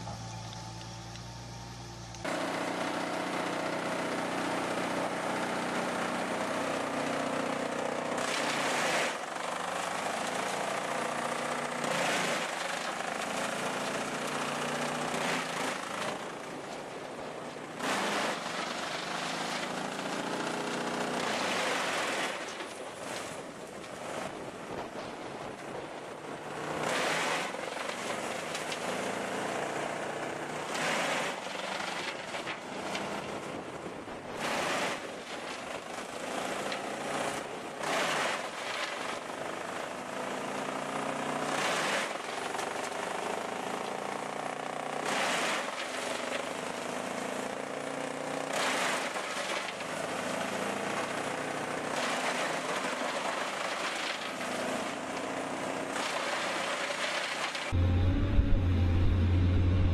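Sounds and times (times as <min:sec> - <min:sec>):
heavy machinery engine hum: 0:00.0 - 0:37.8, 0:53.1 - 0:59.9
loud rushing bursts: 0:57.8 - 0:59.9.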